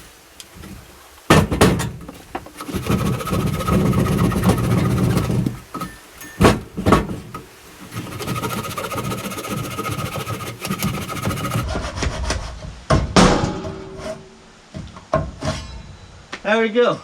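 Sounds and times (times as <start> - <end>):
sharp knocks: 1.3 - 7.5.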